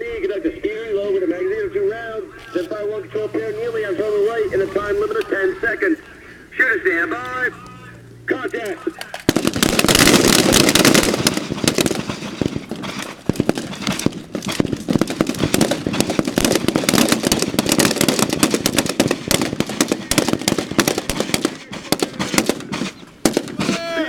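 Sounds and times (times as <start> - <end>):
rifle shots overlapping: 8.4 - 24.0.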